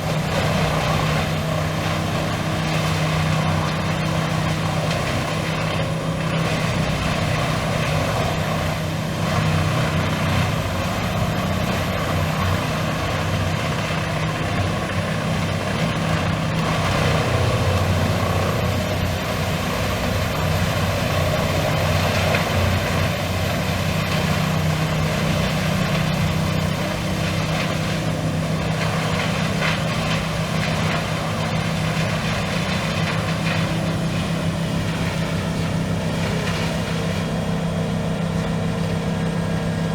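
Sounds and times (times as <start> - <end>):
diesel engine running under load: 0.0 - 39.9
thin high whine: 8.1 - 14.1, 16.6 - 28.9.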